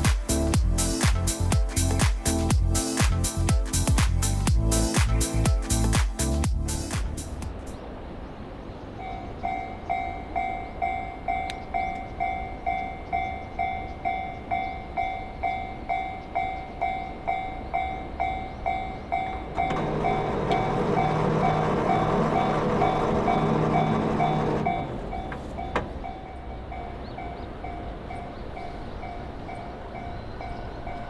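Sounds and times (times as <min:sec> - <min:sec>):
train rumble: 0:00.0 - 0:31.0
level crossing warning bell: 0:09.0 - 0:31.0.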